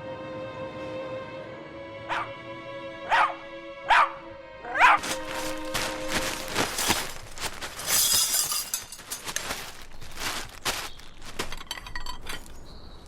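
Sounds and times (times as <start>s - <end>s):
glass crash: 6.5s - 9.8s
glass clinking and clattering: 6.6s - 9.8s, 11.4s - 12.7s.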